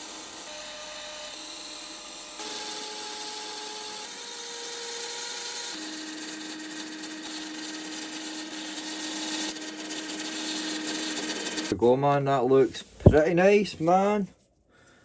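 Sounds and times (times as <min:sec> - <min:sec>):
lathe motor whine: 0:00.0 - 0:11.7
filing and sanding rasp: 0:04.0 - 0:11.7.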